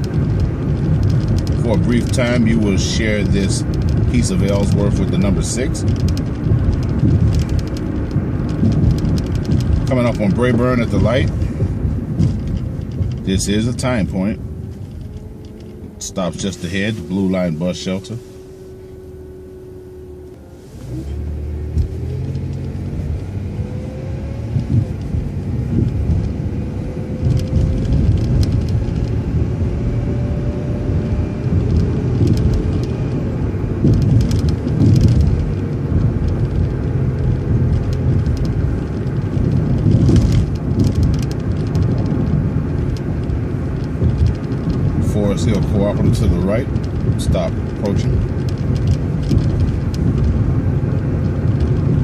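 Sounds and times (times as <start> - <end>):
vehicle engine rumble: 0.0 - 52.0
faint whine rising in pitch: 13.7 - 27.8.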